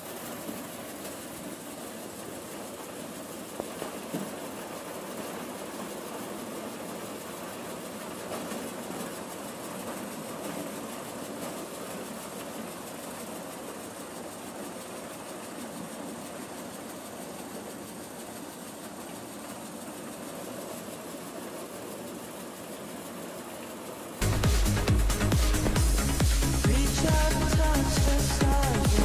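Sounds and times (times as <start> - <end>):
farm machine engine running: 24.2 - 29.0.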